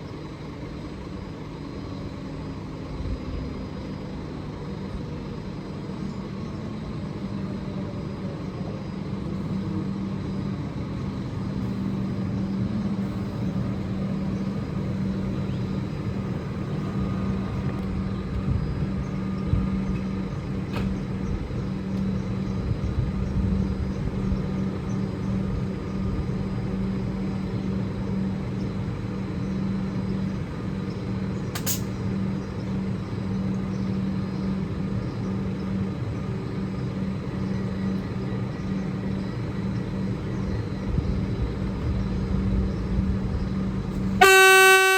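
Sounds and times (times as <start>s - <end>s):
electric train hum and rumble: 0.0s - 44.9s
sharp click: 31.6s - 32.0s.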